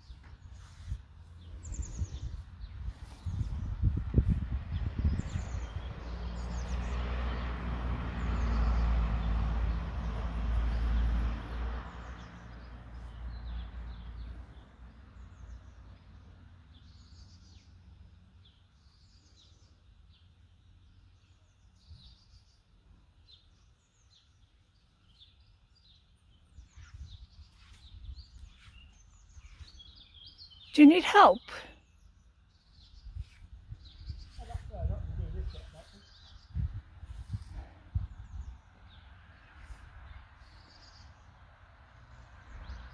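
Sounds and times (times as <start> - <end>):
small birds chirping: 0.0 - 7.6, 11.8 - 42.9
vehicle passing: 4.5 - 14.8, 37.0 - 42.9.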